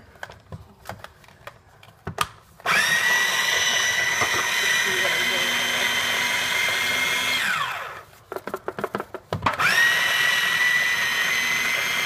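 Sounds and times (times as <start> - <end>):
food processor motor whining: 2.6 - 8.0, 9.5 - 12.0.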